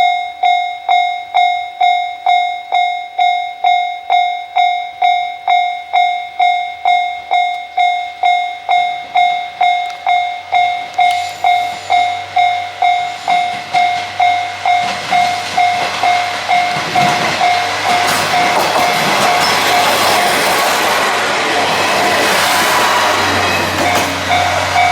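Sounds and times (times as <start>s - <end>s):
level crossing alarm dinging: 0.0s - 21.0s, 22.8s - 24.9s
train passing rumble: 7.8s - 24.9s.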